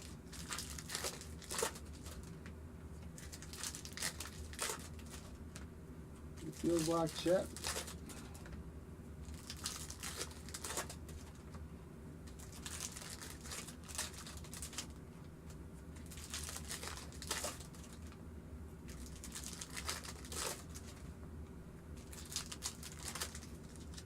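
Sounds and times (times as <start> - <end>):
card packaging crinkling and tearing: 0.0 - 2.4, 3.2 - 5.4, 6.4 - 8.1, 9.2 - 11.5, 12.3 - 15.0, 16.0 - 18.2, 18.9 - 21.1, 22.0 - 24.0.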